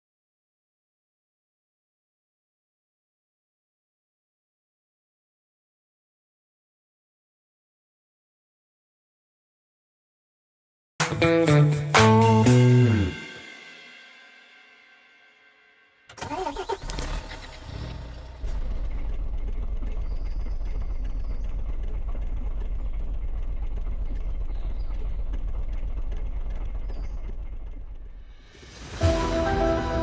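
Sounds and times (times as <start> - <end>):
truck engine starting and idling: 16.1 - 30.0
engine knocking: 16.2 - 28.7.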